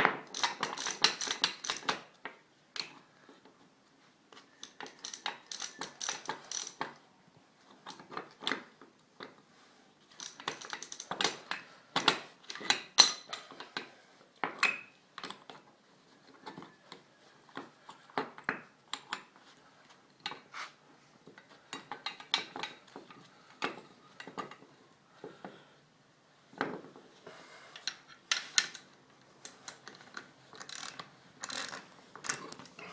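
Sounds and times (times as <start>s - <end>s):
ratchet wrench clicking: 0.3s - 1.9s, 4.6s - 6.8s, 30.6s - 31.8s
metal tools clinking: 12.5s - 13.5s.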